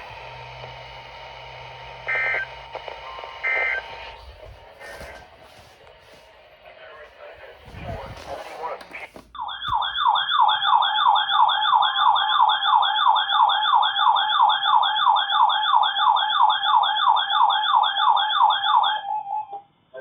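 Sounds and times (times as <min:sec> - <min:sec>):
electronic siren-like alert tone: 0:02.0 - 0:05.1, 0:09.4 - 0:19.6.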